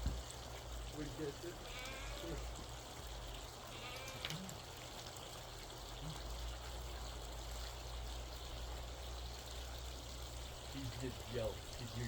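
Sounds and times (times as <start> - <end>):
water running from a hose: 0.0 - 12.0.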